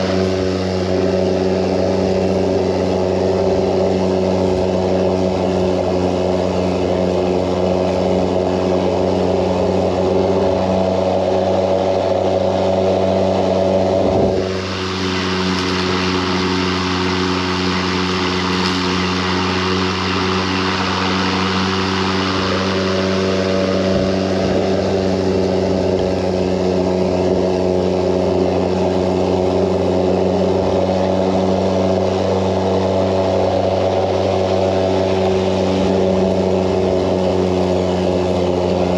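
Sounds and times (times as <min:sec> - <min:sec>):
lawn mower humming: 0:00.0 - 0:38.9.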